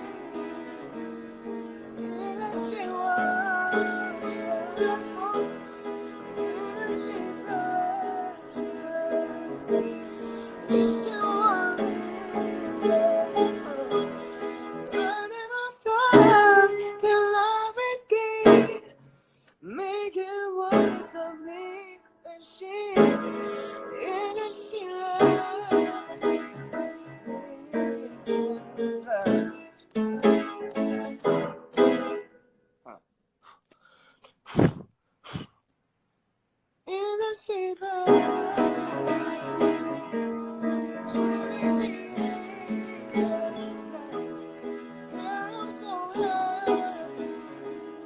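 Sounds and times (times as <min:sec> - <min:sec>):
man singing: 0:00.0 - 0:01.1, 0:01.9 - 0:19.0, 0:19.6 - 0:31.4, 0:36.9 - 0:48.0
piano chords: 0:00.0 - 0:19.0, 0:20.5 - 0:21.8, 0:22.7 - 0:32.4, 0:37.8 - 0:48.0
person singing high wavering melody: 0:06.4 - 0:14.2, 0:24.0 - 0:30.8, 0:40.7 - 0:44.4.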